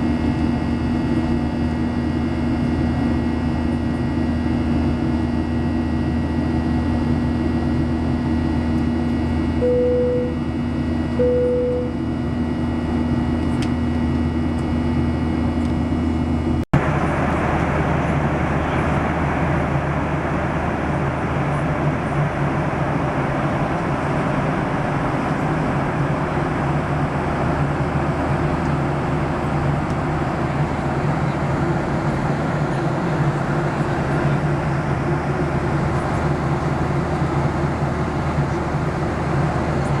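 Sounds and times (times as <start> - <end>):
aircraft cabin engine hum: 0.0 - 40.0
faint steady tones: 9.6 - 10.4, 11.2 - 12.0.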